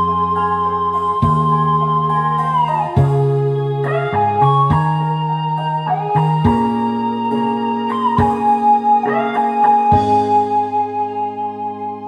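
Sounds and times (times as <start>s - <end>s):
held melody note sliding down: 0.0s - 12.0s
low chord notes: 0.0s - 12.0s.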